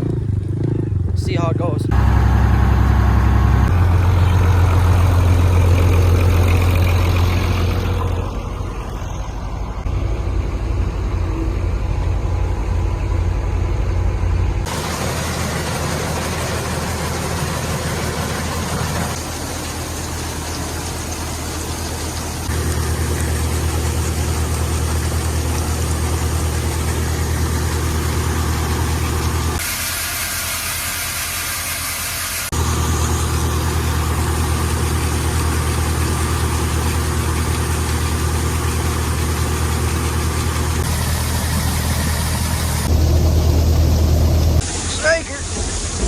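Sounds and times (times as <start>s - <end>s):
tractor engine running: 0.0s - 46.0s.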